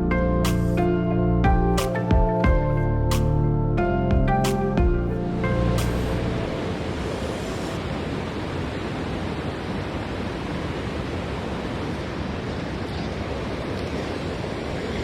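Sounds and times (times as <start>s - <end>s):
music: 0.0s - 7.8s
stream water flowing: 5.3s - 15.0s.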